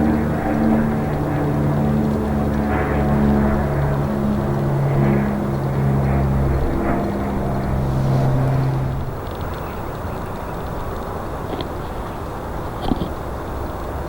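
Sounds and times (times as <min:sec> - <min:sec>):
jet engines droning: 0:00.0 - 0:14.0
rushing noise: 0:01.3 - 0:10.4.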